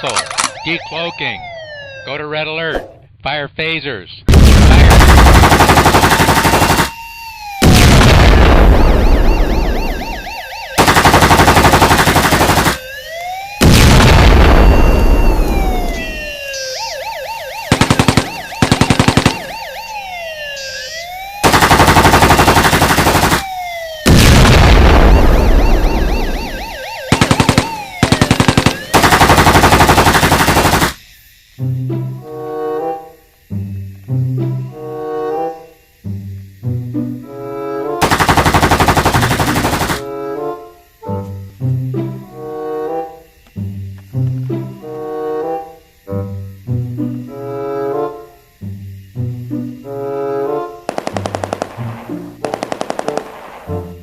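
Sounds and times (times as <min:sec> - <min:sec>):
wailing siren alarm tone: 0:00.4 - 0:02.6, 0:06.3 - 0:30.9, 0:31.6 - 0:38.0, 0:39.6 - 0:50.9
machine-gun fire bursts: 0:04.3 - 0:07.0, 0:10.0 - 0:12.8, 0:17.6 - 0:19.7, 0:21.4 - 0:24.8, 0:26.0 - 0:31.0, 0:38.0 - 0:40.0, 0:50.9 - 0:53.8.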